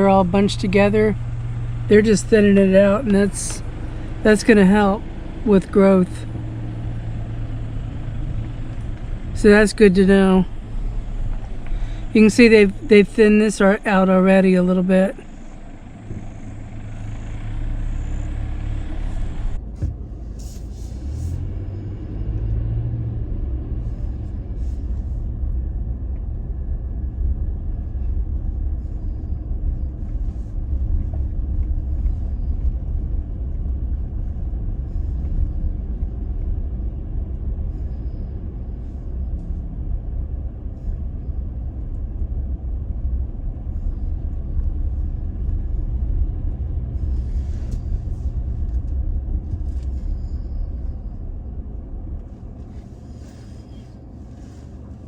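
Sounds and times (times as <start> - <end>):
truck engine and tyres rumbling: 0.0 - 55.0.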